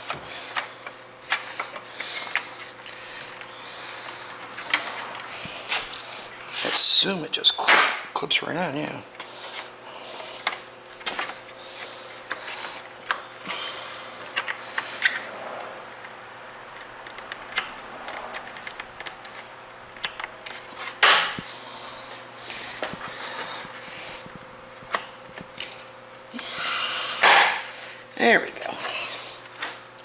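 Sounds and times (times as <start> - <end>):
plastic parts clicking and rattling: 0.0 - 5.3, 14.2 - 16.2, 16.8 - 21.4
faint steady hum: 0.0 - 30.0.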